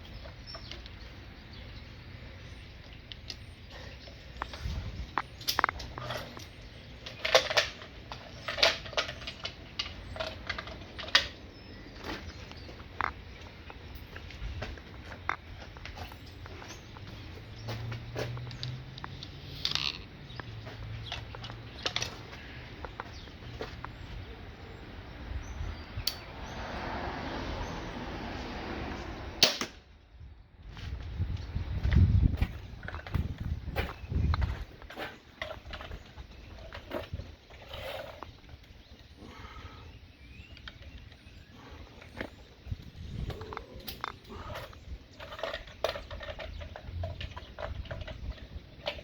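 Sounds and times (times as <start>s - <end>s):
crossbow firing crack: 29.4s - 29.8s.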